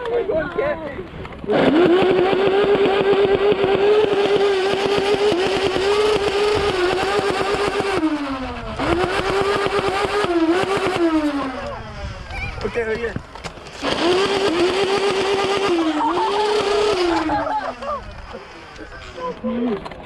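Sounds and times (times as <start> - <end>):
balls firing rapidly: 1.3 - 11.7, 13.0 - 18.3
toy blaster motor whine: 1.5 - 12.8, 13.4 - 19.4.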